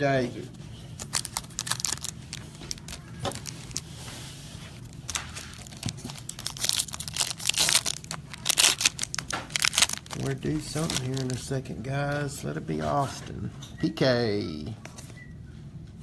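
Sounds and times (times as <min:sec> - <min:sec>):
cards rustling and clicking: 0:01.0 - 0:04.1, 0:04.8 - 0:12.3
foil wrappers crinkling and tearing: 0:01.0 - 0:04.1, 0:04.7 - 0:12.3.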